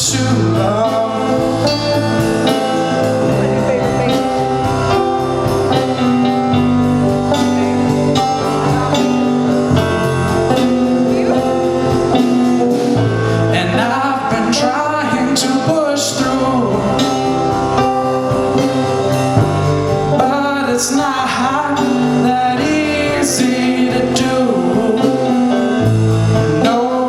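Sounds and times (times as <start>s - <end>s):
bending lead guitar line: 0.0s - 27.0s
slow band song with singing: 0.0s - 27.0s.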